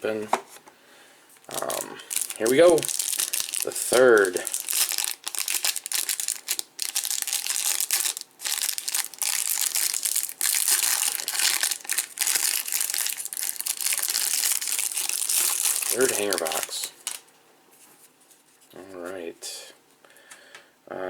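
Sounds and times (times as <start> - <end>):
plastic wrapping crinkling and tearing: 1.4 - 17.2.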